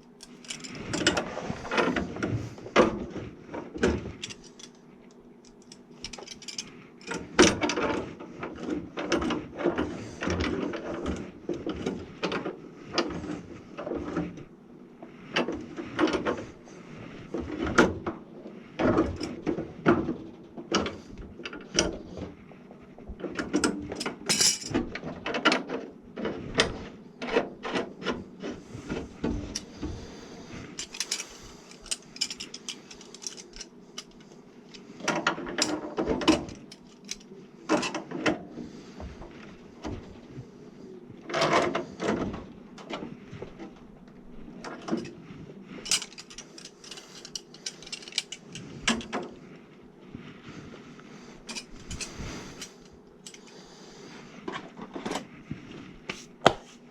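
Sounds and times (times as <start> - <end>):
tools and parts clicking and rattling: 0.0 - 14.5, 15.3 - 16.5, 18.8 - 22.3, 23.2 - 29.9, 30.7 - 38.5, 41.3 - 43.8, 44.6 - 49.4, 51.4 - 53.6.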